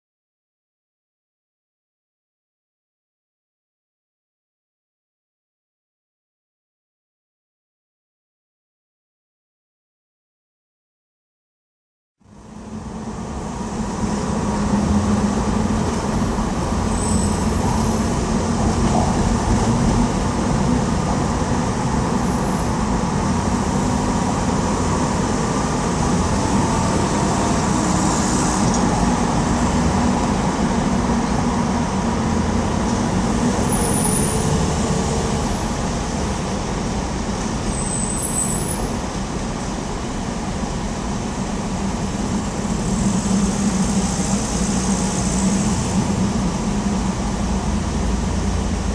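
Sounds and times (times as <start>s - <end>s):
bridge traffic rumble: 12.2s - 48.9s.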